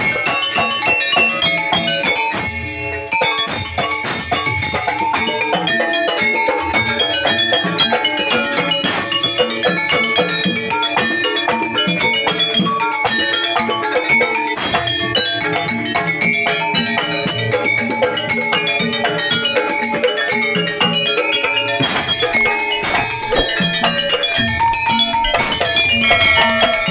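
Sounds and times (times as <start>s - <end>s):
drums: 0.0s - 26.9s
struck tuned percussion: 21.8s - 26.9s.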